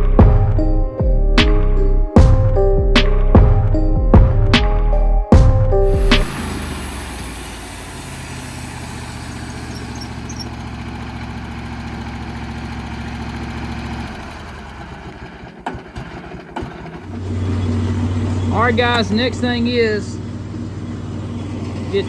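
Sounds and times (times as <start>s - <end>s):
engine idling: 5.8s - 22.0s
sharp knocks: 15.6s - 17.1s.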